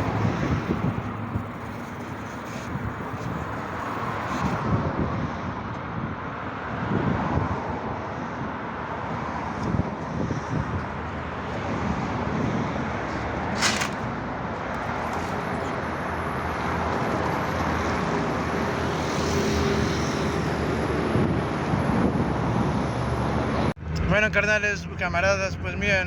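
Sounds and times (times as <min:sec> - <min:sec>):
car engine and exhaust running: 0:00.0 - 0:04.6
road noise: 0:00.0 - 0:26.0.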